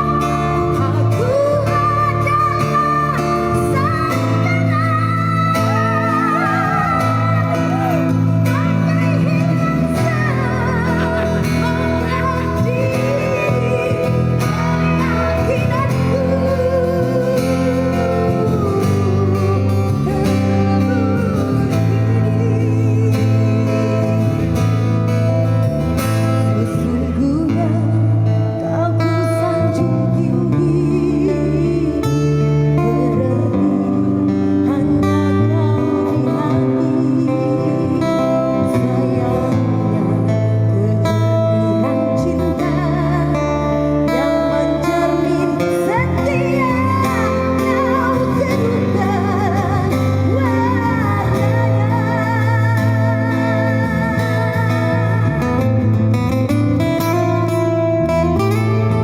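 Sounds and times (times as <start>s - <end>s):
busker band playing: 0.0s - 26.5s
guitar accompaniment: 0.0s - 59.0s
person singing with vibrato: 0.0s - 59.0s.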